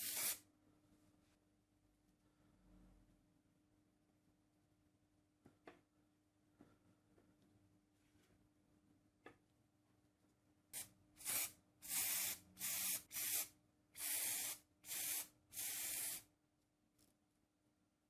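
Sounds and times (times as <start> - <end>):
aerosol spray can hissing: 0.0 - 0.4, 10.8 - 16.3.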